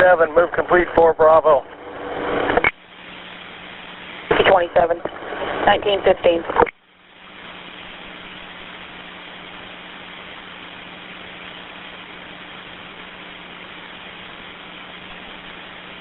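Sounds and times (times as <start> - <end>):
low steady hum: 0.0 - 16.0
radio static hiss: 0.0 - 16.0.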